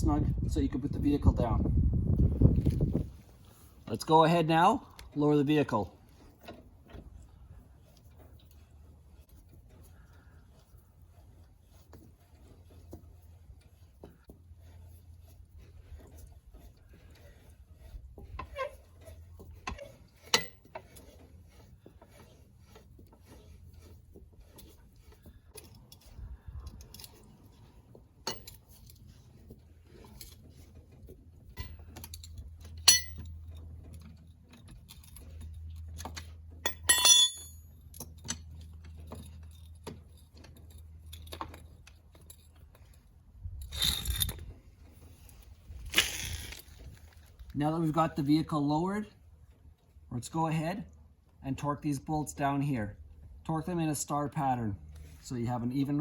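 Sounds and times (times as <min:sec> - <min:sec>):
ringing metal clink: 0:32.8 - 0:33.3, 0:36.6 - 0:37.7.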